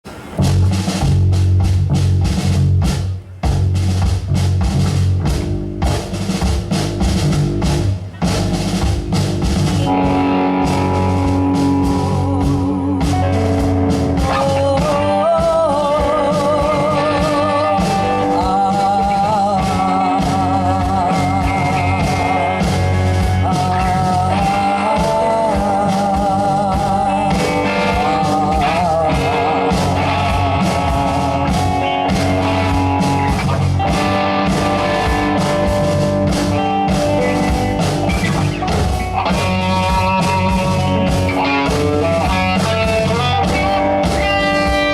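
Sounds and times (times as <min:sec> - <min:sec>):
rock band playing: 0:00.1 - 0:44.9
person singing with vibrato: 0:10.9 - 0:32.0.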